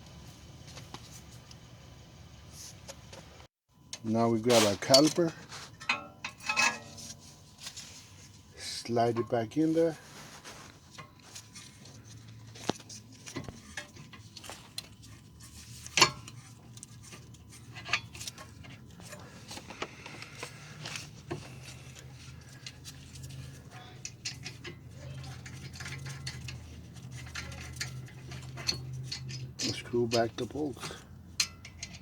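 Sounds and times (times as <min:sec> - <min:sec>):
metal clinks and knocks: 0:05.8 - 0:07.2, 0:21.2 - 0:32.0.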